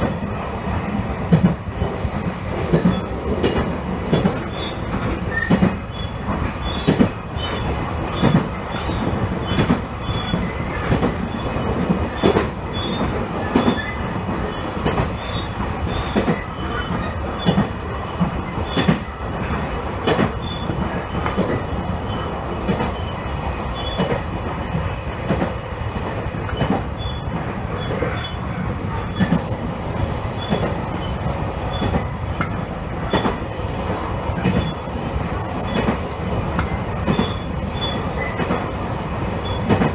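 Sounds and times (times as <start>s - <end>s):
train wheels rumbling: 0.0s - 23.0s, 23.9s - 39.9s
faint wheel squeal: 26.6s - 39.9s.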